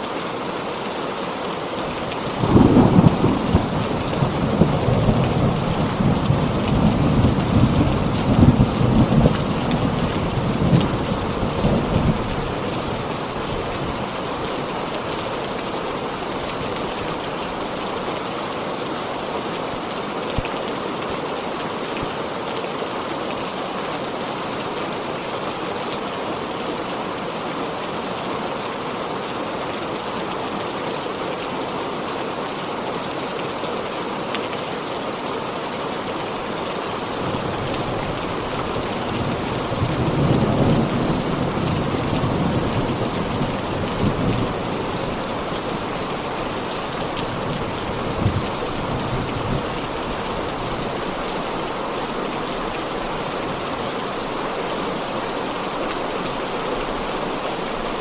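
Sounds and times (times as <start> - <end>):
heavy rain falling: 0.0 - 58.0
thunder rumbling: 2.2 - 13.0.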